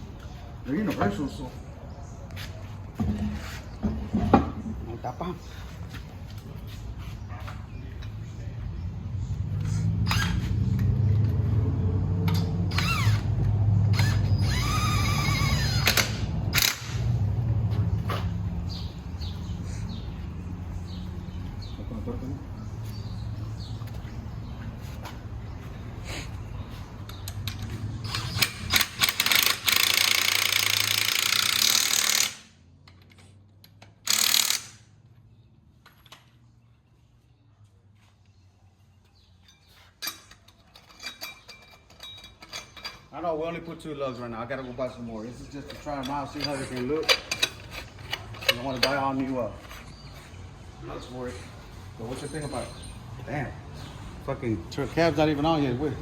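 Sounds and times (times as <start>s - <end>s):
power tool whining: 12.7s - 17.1s
impact wrench rattling: 27.1s - 34.9s, 45.4s - 50.3s.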